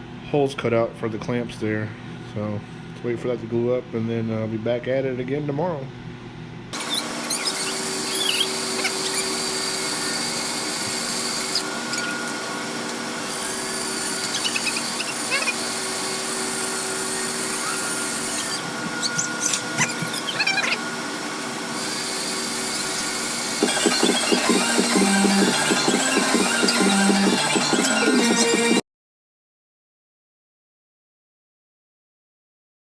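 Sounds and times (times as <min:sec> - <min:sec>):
power tool whining: 0:06.8 - 0:28.8.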